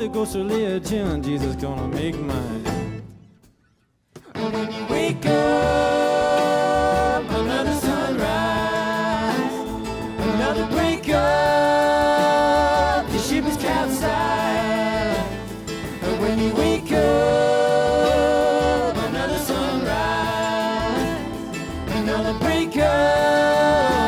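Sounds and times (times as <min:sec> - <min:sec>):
live band playing: 0:04.3 - 0:24.0.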